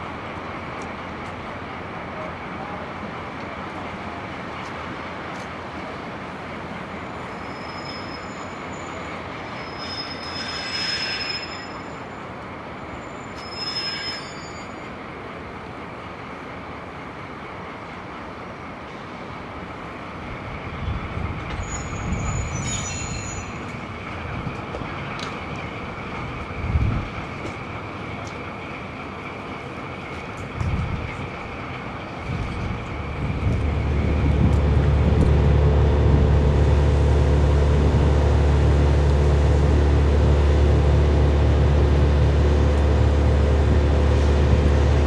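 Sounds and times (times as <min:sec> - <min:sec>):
railway wheels rumbling: 0:00.0 - 0:45.0
high-pitched flange squeal: 0:09.6 - 0:12.1, 0:13.0 - 0:14.8, 0:21.6 - 0:23.7.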